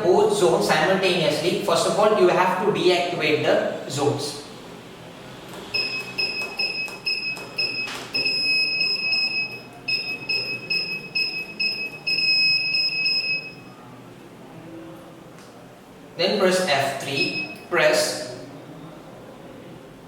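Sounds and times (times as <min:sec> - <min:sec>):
keypad beeping: 0:05.7 - 0:13.7, 0:17.1 - 0:17.7.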